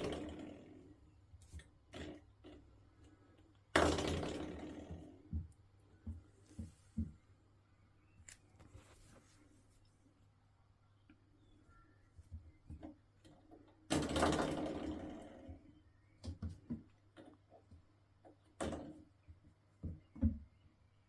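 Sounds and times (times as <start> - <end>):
door stopper twanging: 0.0 - 1.0, 3.7 - 5.4, 13.8 - 15.7.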